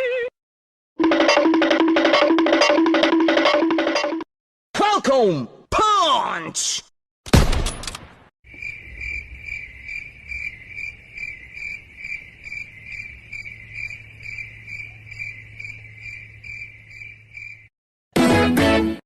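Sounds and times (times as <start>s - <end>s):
crickets chirping: 8.5s - 17.7s.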